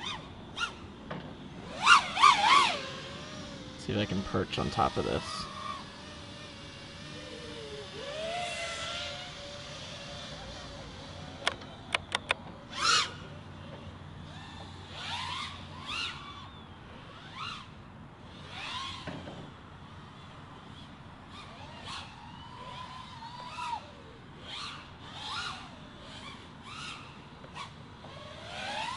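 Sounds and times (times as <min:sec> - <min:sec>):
drone motors whining: 0:00.0 - 0:28.9
sharp clicks: 0:11.4 - 0:12.5.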